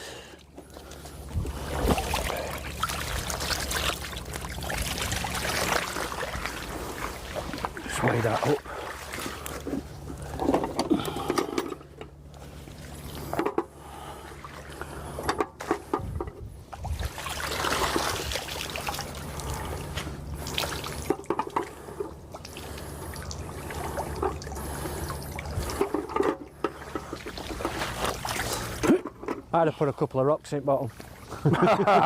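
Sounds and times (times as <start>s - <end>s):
steady low hum: 0.0s - 32.0s
water trickling and splashing: 0.6s - 11.4s, 12.3s - 29.5s, 30.9s - 31.6s.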